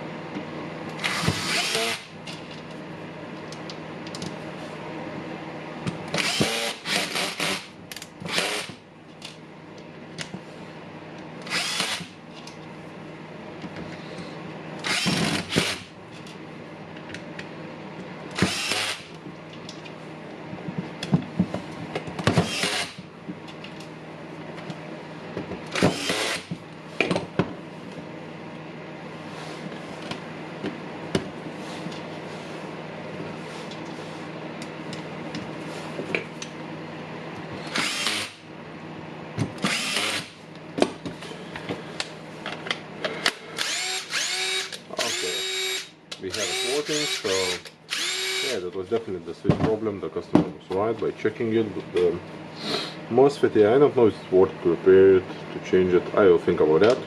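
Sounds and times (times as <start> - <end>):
impact driver bursts: 1.0 - 2.1, 6.2 - 7.7, 8.3 - 8.8, 11.5 - 12.2, 14.8 - 15.9, 18.4 - 19.1, 22.3 - 23.0, 25.7 - 26.5, 37.6 - 38.4, 39.6 - 40.4, 43.3 - 48.6.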